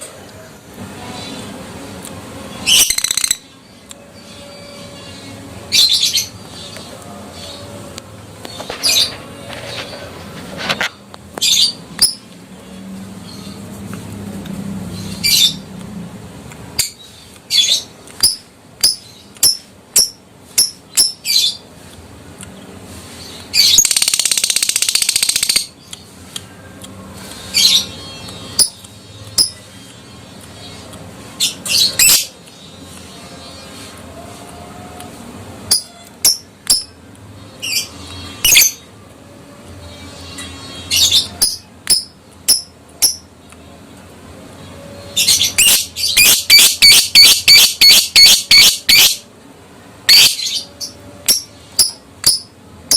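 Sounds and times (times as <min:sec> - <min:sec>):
lovebird chirping and squawking: 0:02.6 - 0:03.4, 0:23.5 - 0:25.7, 0:31.4 - 0:32.3, 0:35.7 - 0:36.9, 0:37.6 - 0:38.8, 0:45.1 - 0:49.2, 0:50.1 - 0:52.5
lovebird chattering trill: 0:45.4 - 0:49.2.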